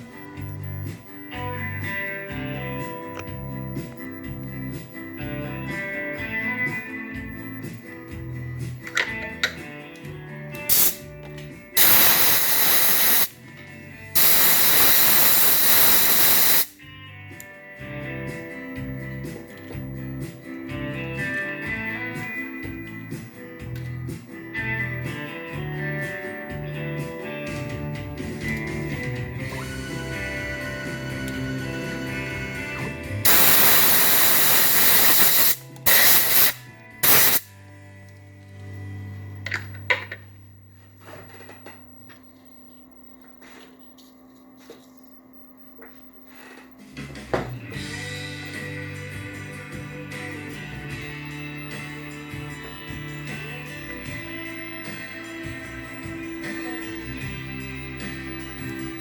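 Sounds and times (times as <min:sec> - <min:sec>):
guitar music: 0:00.0 - 0:40.2, 0:47.6 - 0:59.0
hissing sprays: 0:10.7 - 0:11.0, 0:11.8 - 0:13.3, 0:14.2 - 0:16.7, 0:33.3 - 0:37.4.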